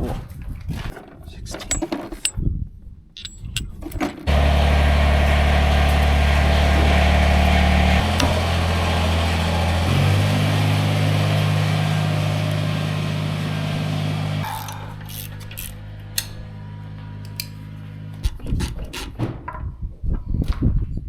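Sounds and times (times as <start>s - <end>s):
outboard engine idling: 4.3s - 14.6s.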